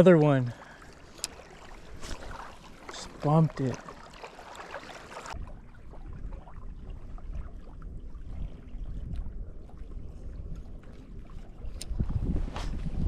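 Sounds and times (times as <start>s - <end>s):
faint water sounds: 0.0s - 12.8s
wind buffeting microphone: 5.3s - 13.0s.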